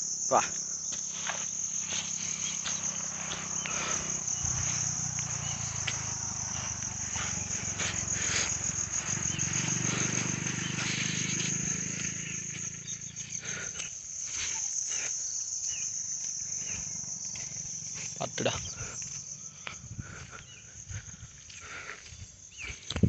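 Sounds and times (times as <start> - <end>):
high-pitched insect chorus: 0.0 - 23.0
footsteps squelching in mud: 0.9 - 15.2.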